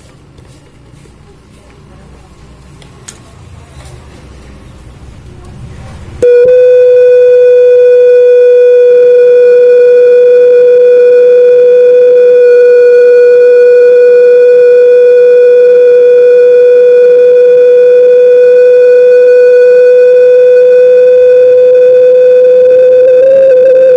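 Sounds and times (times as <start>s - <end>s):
loud steady whistle tone from speaker: 6.2s - 23.9s.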